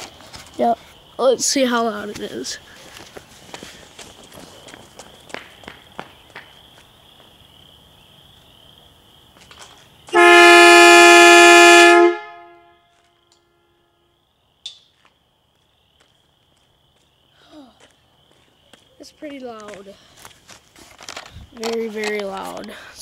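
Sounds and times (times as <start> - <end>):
truck air horns blast: 10.2 - 12.9.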